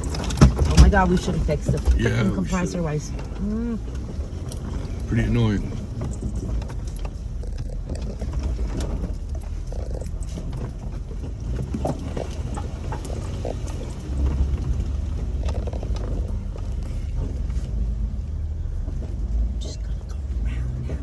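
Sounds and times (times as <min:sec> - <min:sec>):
irregular knocks and clicks: 0:00.0 - 0:02.1
vehicle engine running low: 0:00.0 - 0:21.0.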